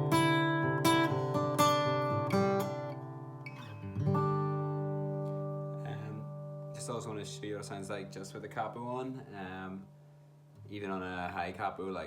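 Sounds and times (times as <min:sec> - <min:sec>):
acoustic guitar strummed: 0:00.0 - 0:08.1.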